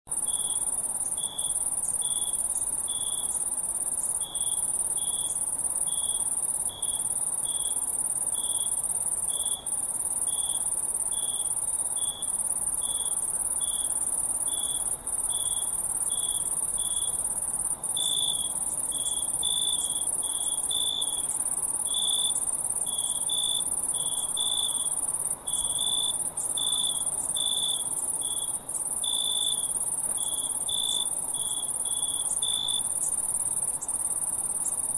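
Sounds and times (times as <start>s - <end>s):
crickets chirping: 0.1s - 34.9s.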